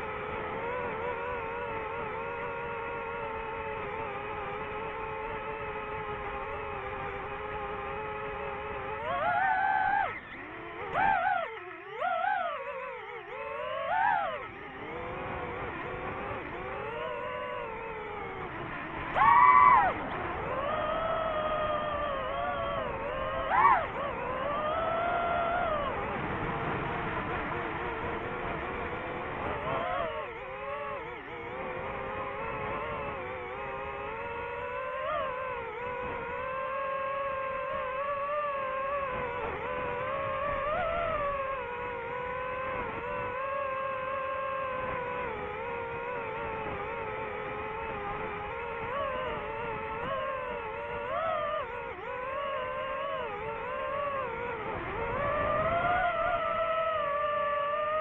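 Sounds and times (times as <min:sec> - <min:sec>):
drone motors whining: 0:00.0 - 0:58.0.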